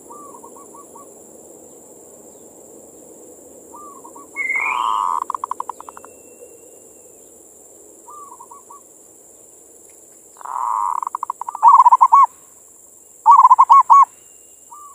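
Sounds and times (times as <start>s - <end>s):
dove rolling coo: 0.0s - 1.4s, 3.3s - 6.8s, 8.0s - 8.8s, 10.4s - 12.3s, 13.3s - 14.1s.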